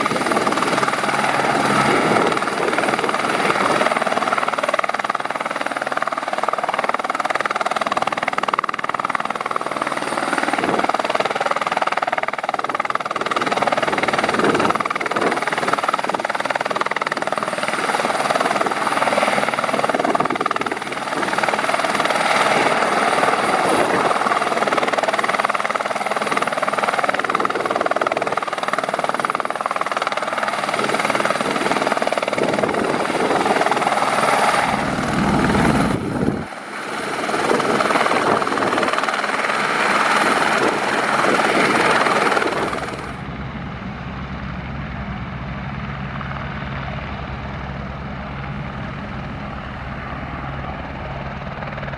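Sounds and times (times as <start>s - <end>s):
helicopter engine and rotors: 0.0s - 51.9s.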